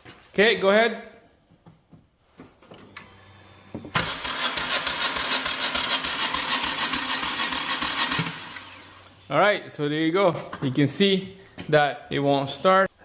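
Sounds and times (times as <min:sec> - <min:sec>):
engine starter cranking: 0:03.9 - 0:09.0.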